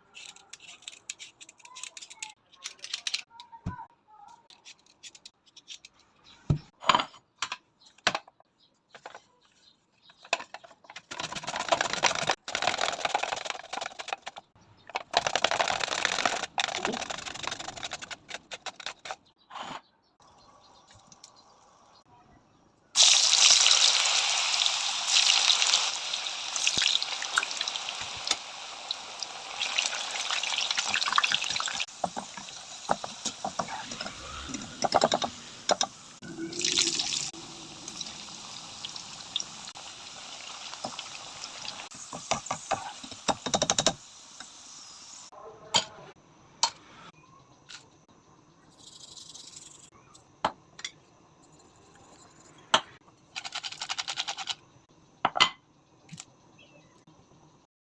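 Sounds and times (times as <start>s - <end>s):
potato slices sizzling in hot oil: 23.0s - 45.3s.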